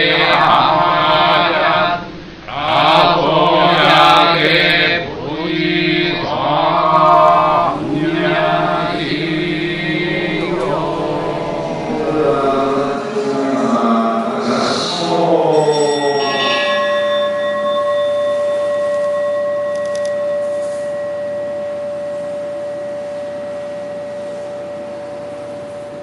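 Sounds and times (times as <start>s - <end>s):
sutra chanting: 0.0s - 19.6s.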